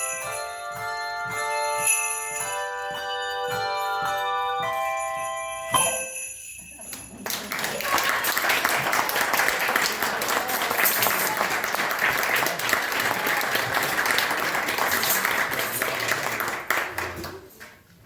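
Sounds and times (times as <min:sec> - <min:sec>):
audience applauding: 0:06.9 - 0:17.8.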